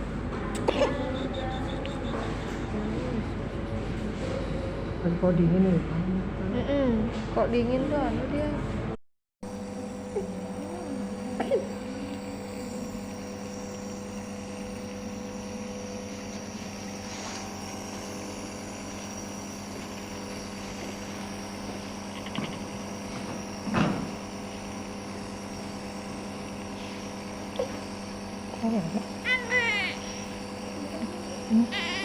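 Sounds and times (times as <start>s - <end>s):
small electric motor humming: 9.5s - 32.0s.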